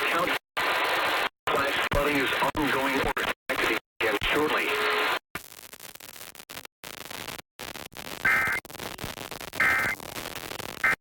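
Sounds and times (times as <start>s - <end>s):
radio static hiss: 0.0s - 11.0s
two-tone digital data bursts: 8.2s - 8.7s, 9.6s - 10.0s, 10.8s - 11.0s.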